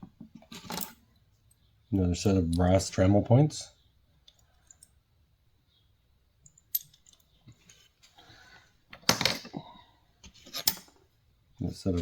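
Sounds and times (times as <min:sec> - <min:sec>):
metal tools clicking: 0:06.4 - 0:07.3.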